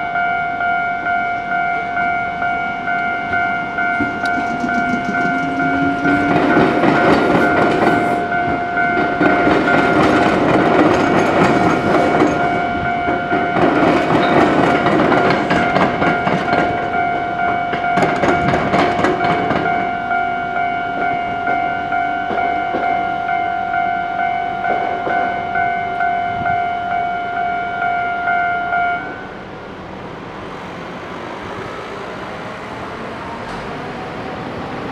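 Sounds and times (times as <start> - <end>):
level crossing warning bell: 0.0 - 33.3
train wheels clattering over rails: 3.3 - 20.0.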